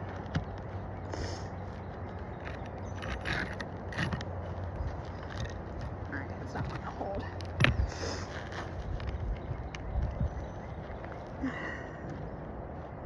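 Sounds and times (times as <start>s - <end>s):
scraping and rustling shingles: 2.0s - 9.2s.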